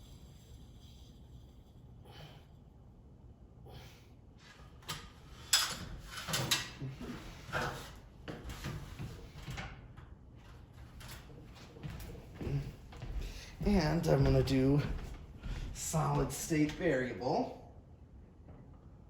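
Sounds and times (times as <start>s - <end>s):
scraping and clattering handling noises: 4.5s - 9.7s.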